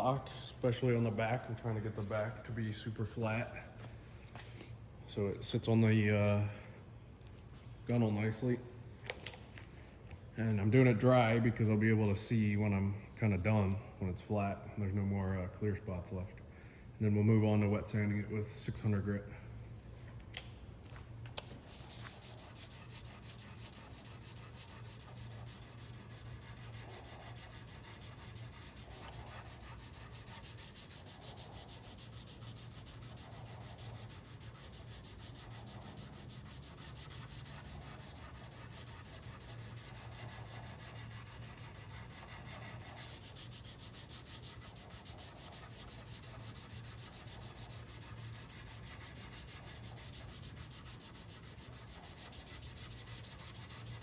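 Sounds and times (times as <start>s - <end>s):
sandpaper sanding back and forth: 21.7s - 54.0s.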